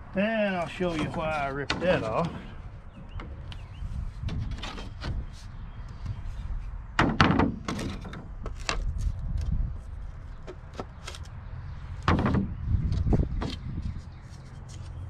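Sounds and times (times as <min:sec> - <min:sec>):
wood knocking on wood: 0:12.0 - 0:13.6.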